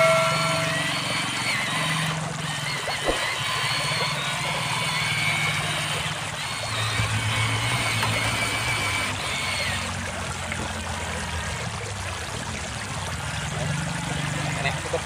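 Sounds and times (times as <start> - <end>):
toy excavator electric motors whining: 0.0 - 11.8
water trickling: 0.0 - 15.0.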